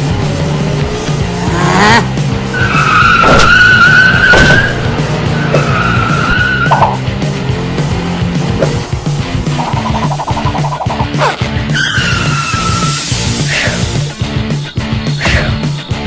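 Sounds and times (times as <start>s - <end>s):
background music with steady beat: 0.0s - 16.0s
tyre screech: 5.4s - 7.0s, 10.7s - 13.9s.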